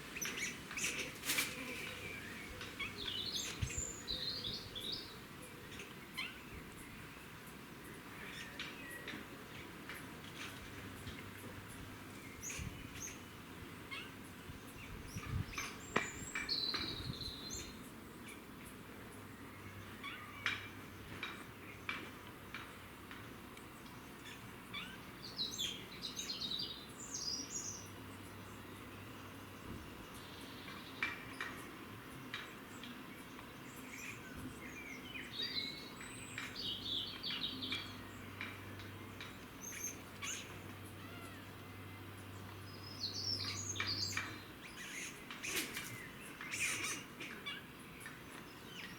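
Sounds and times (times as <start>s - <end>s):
small birds chirping: 0.0s - 10.1s, 10.9s - 48.9s
squirrels squeaking and chirping: 39.6s - 41.4s, 43.4s - 47.7s
long high squirrel call: 46.5s - 47.7s.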